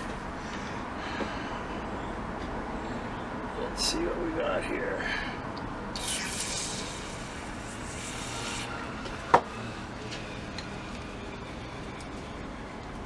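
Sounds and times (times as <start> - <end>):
aerosol spray hissing: 6.0 - 11.3.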